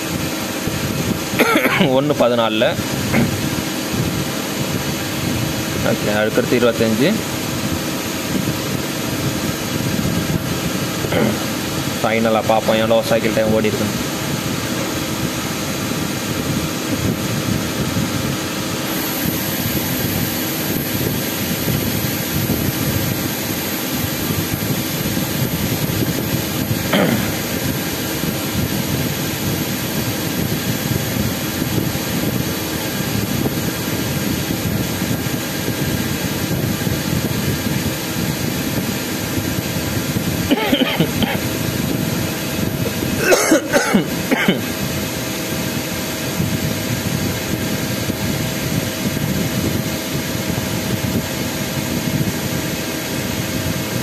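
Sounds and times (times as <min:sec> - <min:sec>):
high thin whine: 0:00.0 - 0:54.0
lathe machining noise: 0:18.4 - 0:36.5.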